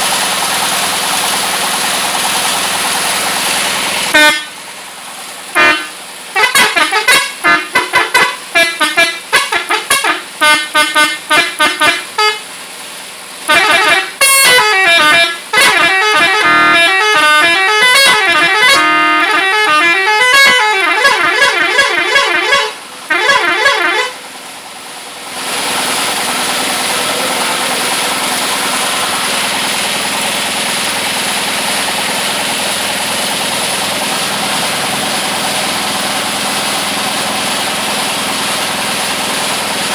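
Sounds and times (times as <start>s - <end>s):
steady motor running: 0.0s - 39.9s
multi-tone horn playing tunes: 4.1s - 4.6s, 5.5s - 12.6s, 13.4s - 24.3s.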